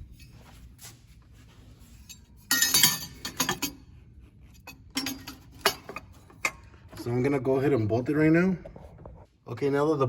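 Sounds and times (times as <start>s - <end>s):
metal parts clinking: 2.1s - 3.8s.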